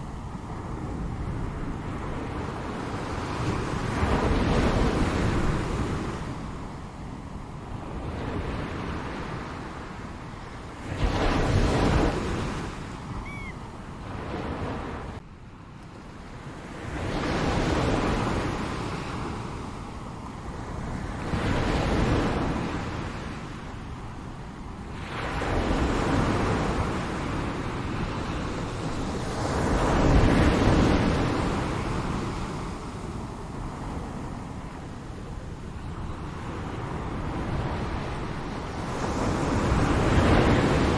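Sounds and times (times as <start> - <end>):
ocean waves breaking: 0.0 - 15.2, 16.2 - 40.9.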